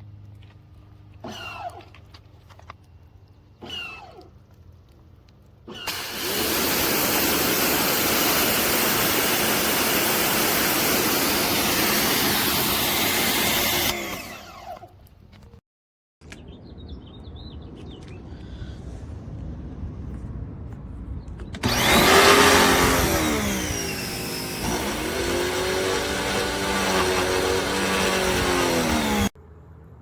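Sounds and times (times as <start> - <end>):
water spraying and hissing: 5.7 - 13.9
pressure washer motor running: 5.8 - 14.8, 21.6 - 29.3.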